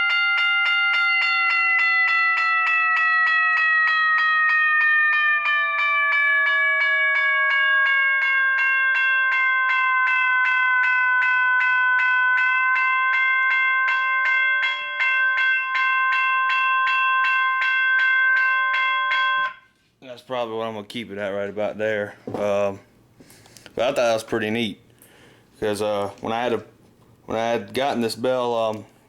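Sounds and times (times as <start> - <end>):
railroad crossing bell dinging: 0.0 - 19.7.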